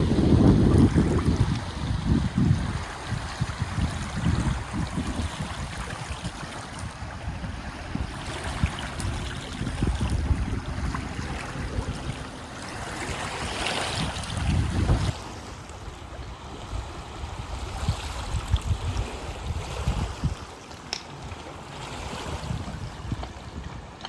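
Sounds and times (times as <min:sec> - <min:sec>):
waves washing against shore: 0:00.0 - 0:24.0
wind buffeting microphone: 0:00.0 - 0:24.0.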